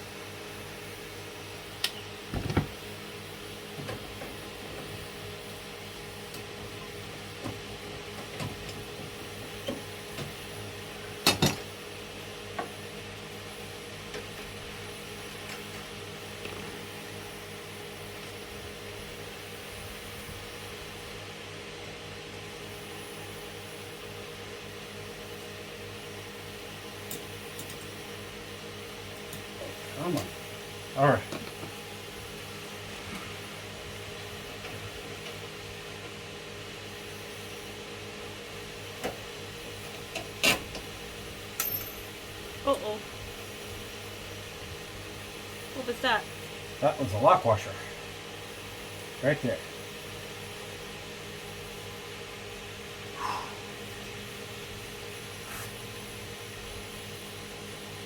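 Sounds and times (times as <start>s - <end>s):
steady mechanical hum: 0.0s - 58.0s
metallic tool clicks and clinks: 41.6s - 42.1s.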